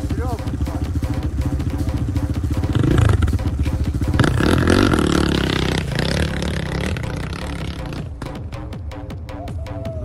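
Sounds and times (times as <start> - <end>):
dirt bike engine revving: 0.5 - 8.2.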